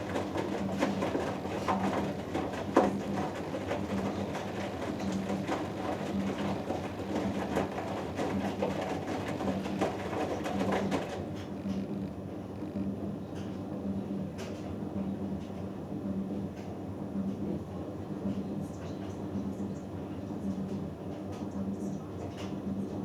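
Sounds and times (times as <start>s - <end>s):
laundry and water sloshing: 0.0s - 11.4s.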